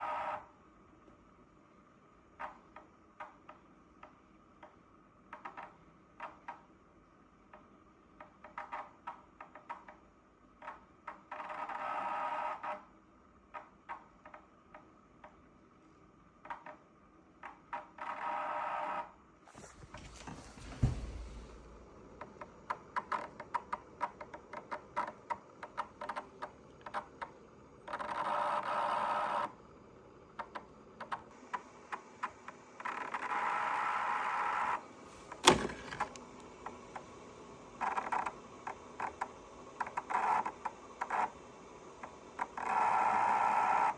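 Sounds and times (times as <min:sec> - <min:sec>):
purifier buzzing: 0:19.5 - 0:24.2, 0:31.4 - 0:43.9.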